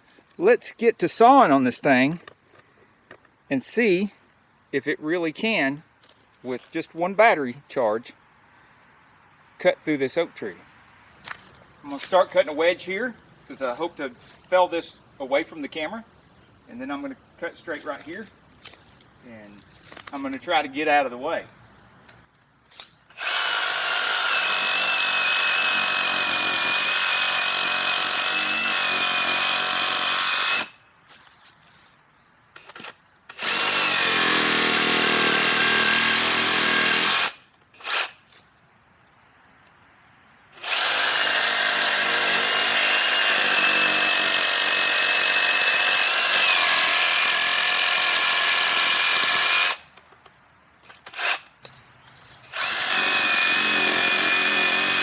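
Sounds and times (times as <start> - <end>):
reciprocating saw cutting wood: 23.1 - 30.8, 32.6 - 38.2, 40.6 - 49.8, 51.1 - 51.5, 52.5 - 55.0.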